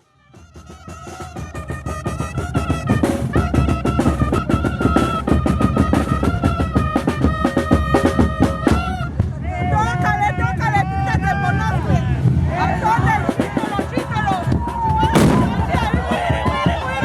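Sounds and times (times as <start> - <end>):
high wind instrument melody: 0.0 - 9.2, 15.1 - 16.9
snare and bass drum rolls: 12.2 - 17.0.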